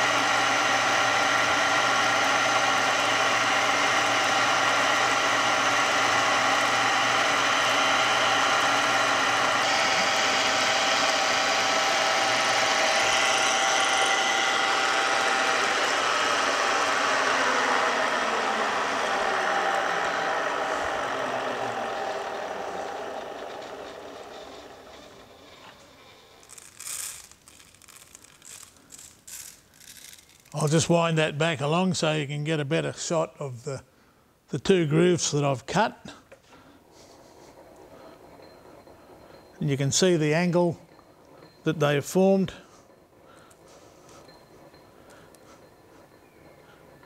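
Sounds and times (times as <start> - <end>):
milling machine running: 0.0 - 30.8
machine running down: 0.0 - 32.3.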